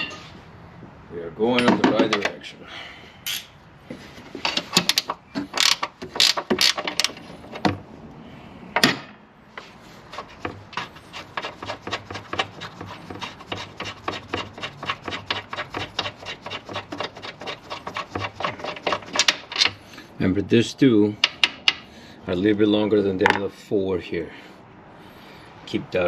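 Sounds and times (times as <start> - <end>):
ratchet wrench clicking: 5.6 - 7.2.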